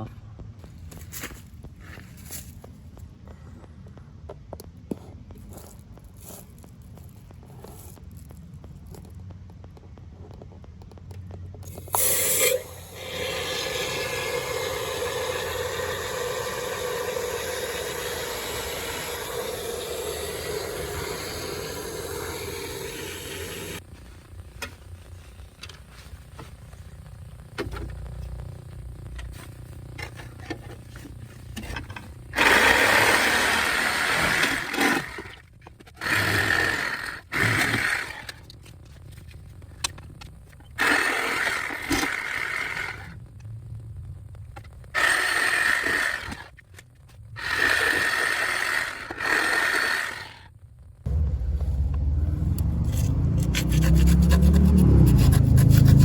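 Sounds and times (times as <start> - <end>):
spray foam can hissing: 11.7 - 23.8.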